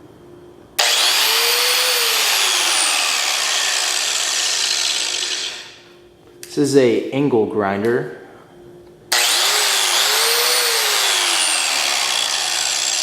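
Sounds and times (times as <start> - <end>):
electric angle grinder whine: 0.8 - 5.9, 9.1 - 13.0.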